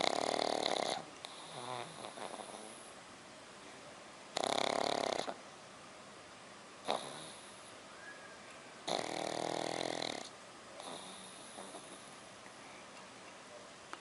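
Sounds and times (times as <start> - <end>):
snort: 0.0 - 3.0, 4.4 - 5.4, 6.8 - 7.7, 8.9 - 12.1
person snoring: 8.9 - 12.0.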